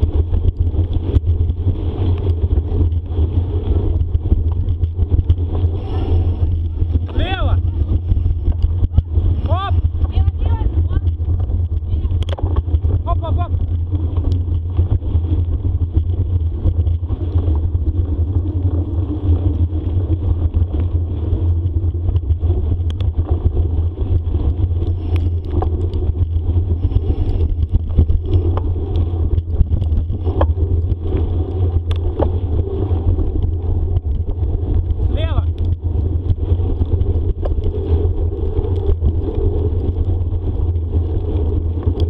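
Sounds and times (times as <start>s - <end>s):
bicycle rolling on dirt trail: 0.0s - 42.0s
clicks and rattles from bumps: 8.3s - 17.7s.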